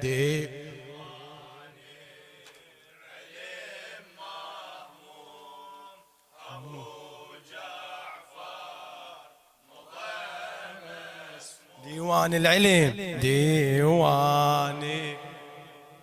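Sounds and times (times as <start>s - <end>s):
man chanting a lament: 0.0s - 1.8s, 11.4s - 16.0s.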